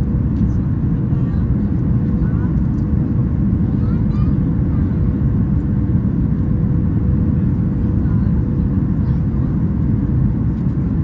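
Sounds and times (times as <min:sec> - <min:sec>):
airplane cabin rumble: 0:00.0 - 0:11.0.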